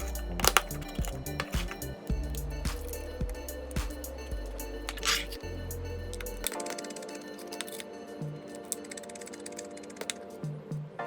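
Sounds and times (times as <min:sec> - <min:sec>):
deep bass layer: 0:00.0 - 0:06.5
background music sustained notes: 0:00.0 - 0:11.0.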